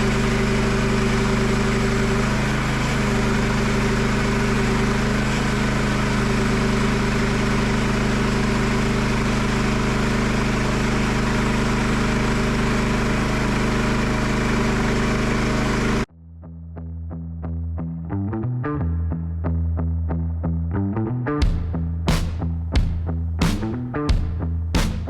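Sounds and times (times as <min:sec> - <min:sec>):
engine running steadily: 0:00.0 - 0:16.1
electric guitar music: 0:16.8 - 0:25.0.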